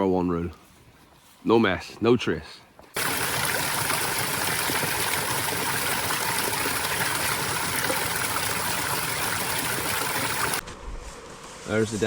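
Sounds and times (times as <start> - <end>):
stream water rushing: 3.0 - 10.6.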